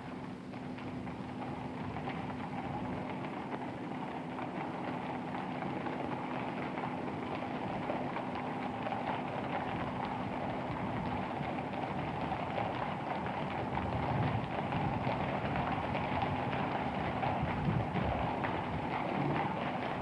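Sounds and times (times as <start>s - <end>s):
horse hooves clip-clopping: 0.5s - 20.0s
faint low hum: 18.0s - 20.0s.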